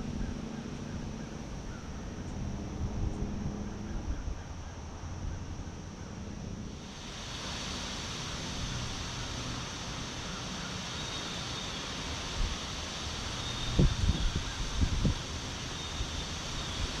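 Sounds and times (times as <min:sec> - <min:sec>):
wind rumble on microphone: 0:00.0 - 0:06.8, 0:13.2 - 0:17.0
leaves rustling in wind: 0:00.0 - 0:17.0.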